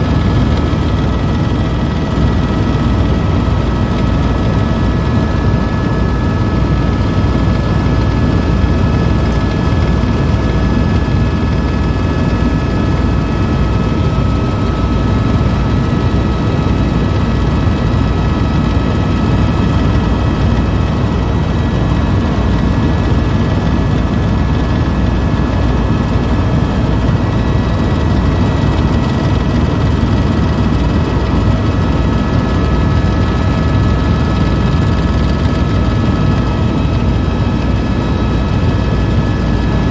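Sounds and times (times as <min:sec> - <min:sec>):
helicopter rotor and engine rumble: 0:00.0 - 0:39.9.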